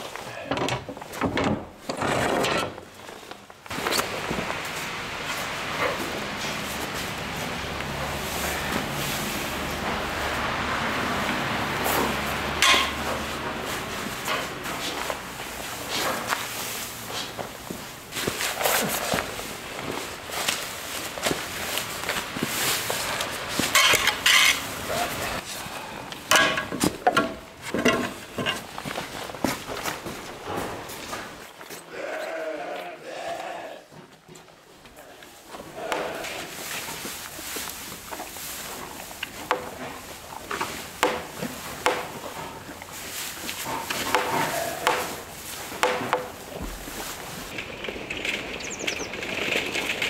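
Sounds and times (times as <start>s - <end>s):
sharp knocks and clatter: 0.5s - 2.9s, 12.0s - 13.6s, 26.3s - 28.7s, 39.3s - 40.0s, 40.6s - 42.6s, 43.7s - 46.9s
metal clatter and scraping: 0.5s - 4.4s, 5.6s - 25.2s, 26.3s - 31.5s, 38.7s - 50.0s.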